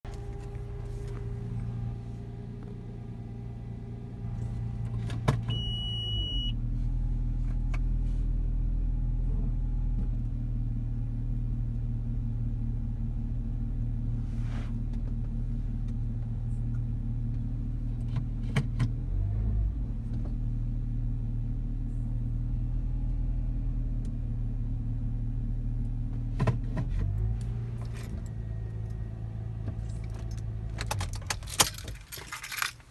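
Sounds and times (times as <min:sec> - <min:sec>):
car engine idling: 0:00.0 - 0:08.8, 0:27.2 - 0:32.9.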